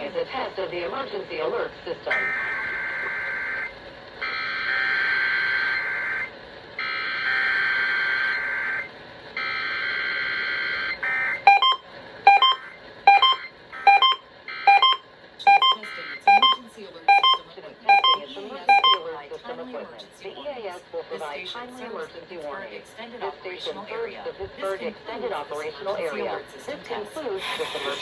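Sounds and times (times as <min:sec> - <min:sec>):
short sharp beeps: 0:11.5 - 0:19.0.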